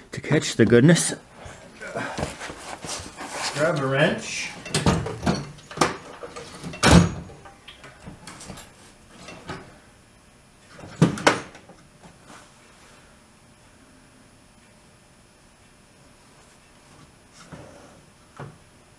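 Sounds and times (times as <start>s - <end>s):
metal tools clanking: 4.5s - 7.5s.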